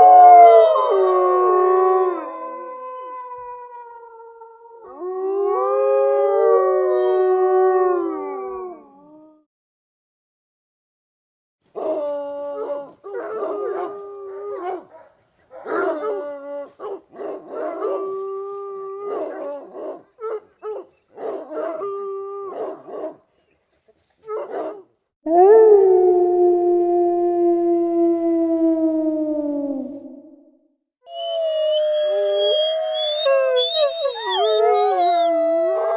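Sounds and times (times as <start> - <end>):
dog howling: 11.8 - 23.2, 24.3 - 30.2, 31.1 - 35.9.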